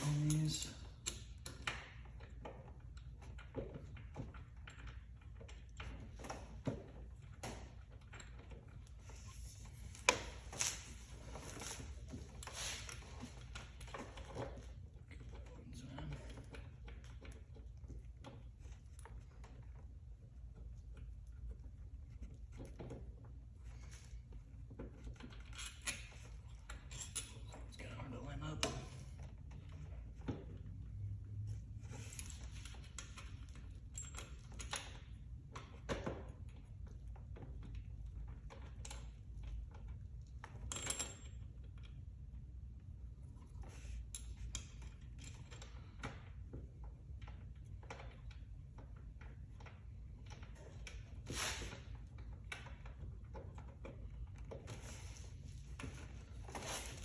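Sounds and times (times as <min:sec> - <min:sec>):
bolts scraping and rustling: 0:43.5 - 0:57.0.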